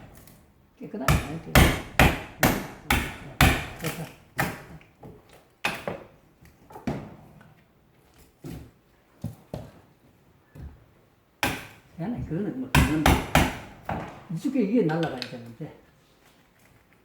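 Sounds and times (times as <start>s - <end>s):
sharp knocks and clanks: 11.4s - 14.2s.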